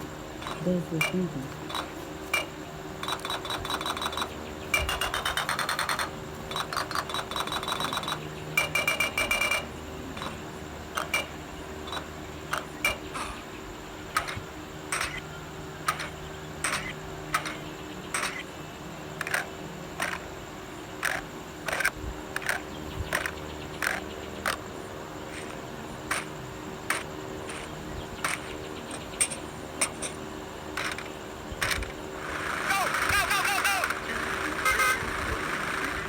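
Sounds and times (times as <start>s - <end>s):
faint steady hum: 0.0s - 36.0s.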